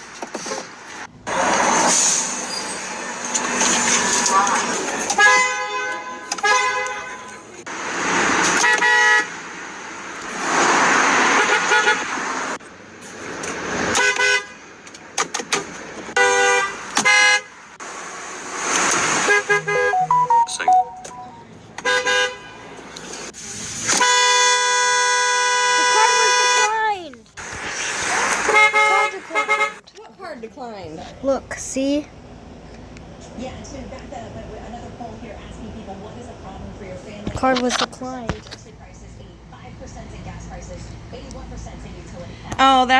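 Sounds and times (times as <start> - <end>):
car horns honking: 4.0 - 7.6, 8.4 - 9.4, 11.2 - 12.4, 13.9 - 14.6, 16.1 - 17.7, 19.0 - 23.0, 23.8 - 29.8.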